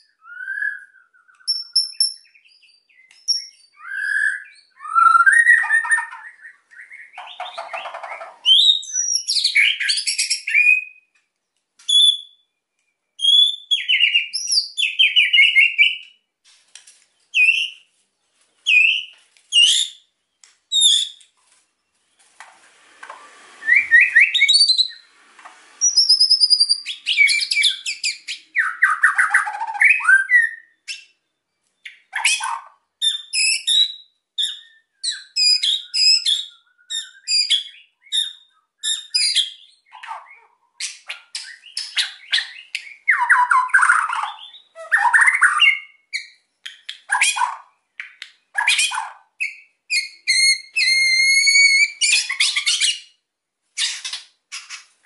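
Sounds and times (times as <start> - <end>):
songbird whistling and chattering: 0.0 - 11.0, 11.9 - 12.4, 13.2 - 16.2, 20.7 - 21.2, 23.6 - 25.1, 25.8 - 31.2, 31.8 - 53.2.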